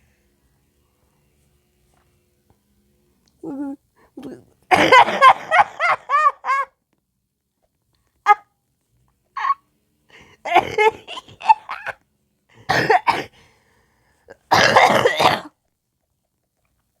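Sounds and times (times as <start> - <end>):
person coughing: 4.2 - 5.4, 10.5 - 11.9, 12.6 - 13.4, 14.3 - 15.5.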